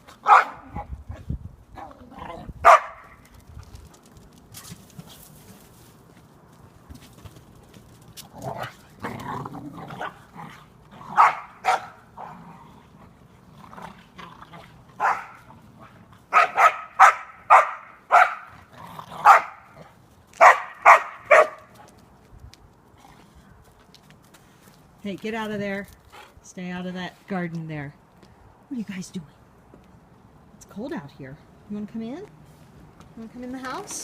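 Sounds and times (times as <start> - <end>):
dogs barking: 0.2 - 0.9, 2.6 - 3.2, 11.1 - 12.4, 15.0 - 15.5, 16.3 - 18.6, 19.2 - 21.7.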